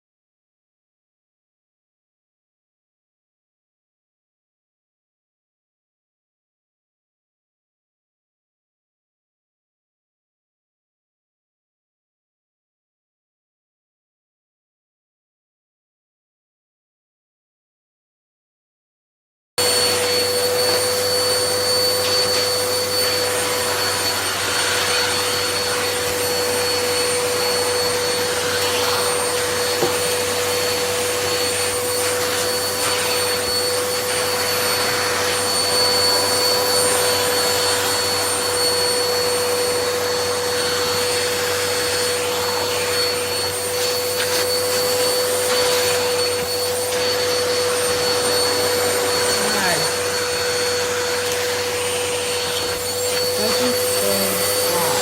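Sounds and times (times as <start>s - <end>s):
vacuum cleaner running: 19.6s - 55.0s.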